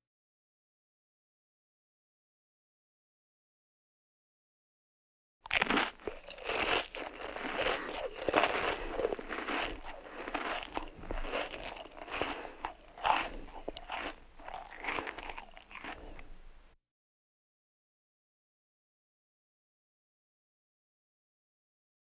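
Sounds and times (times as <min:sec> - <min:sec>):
person chewing food: 0:05.5 - 0:16.5.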